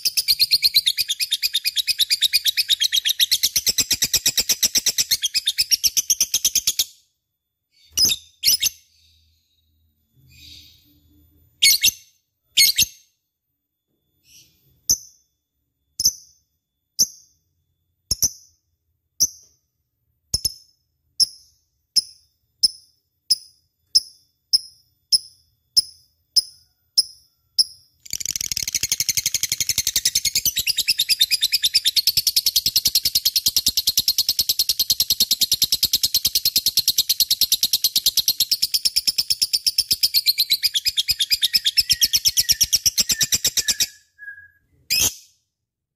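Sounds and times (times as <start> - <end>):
lovebird chirping and chattering: 0.0 - 6.9, 7.7 - 9.4, 10.2 - 11.0, 11.6 - 13.1, 16.0 - 16.4, 20.3 - 44.0.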